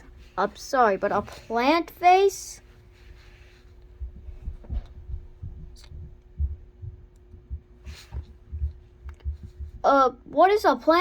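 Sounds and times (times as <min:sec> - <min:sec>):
faint steady hum: 0:00.0 - 0:11.0
soft low thumps: 0:03.7 - 0:10.4.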